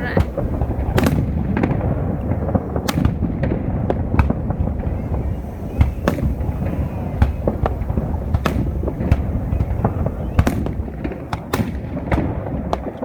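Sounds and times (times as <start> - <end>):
fireworks bursting: 0.0 - 13.0
low rumble of echoing reports: 0.0 - 13.0.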